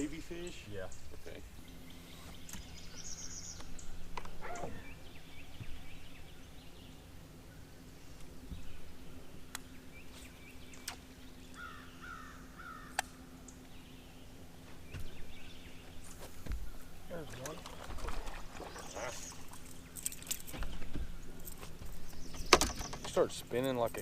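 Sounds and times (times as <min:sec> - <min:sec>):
bird harsh calls: 0:01.7 - 0:07.8, 0:09.8 - 0:14.3.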